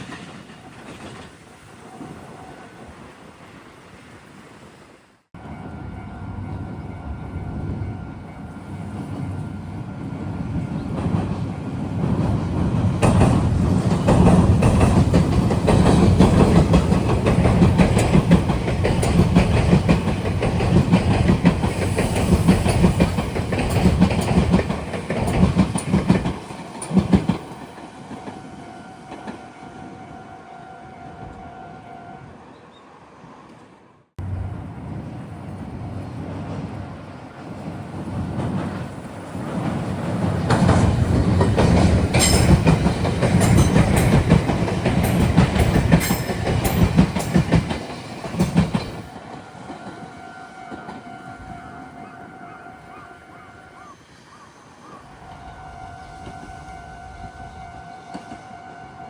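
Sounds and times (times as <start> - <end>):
train wheels clattering over joints: 10.8 - 28.3, 38.1 - 50.0.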